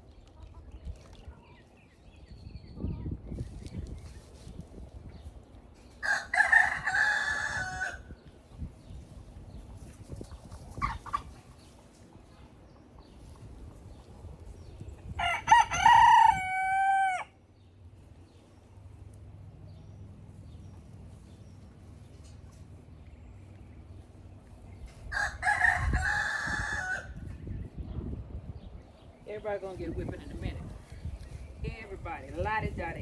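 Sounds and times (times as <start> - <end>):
rooster crowing: 6.0 - 8.0, 15.2 - 17.4, 25.1 - 27.2.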